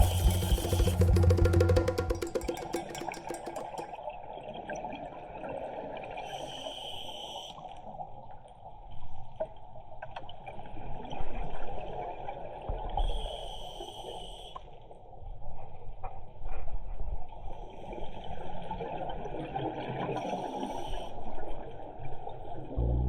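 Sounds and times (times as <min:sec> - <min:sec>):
regulator inhalation hiss: 0:00.0 - 0:02.2, 0:13.1 - 0:14.6.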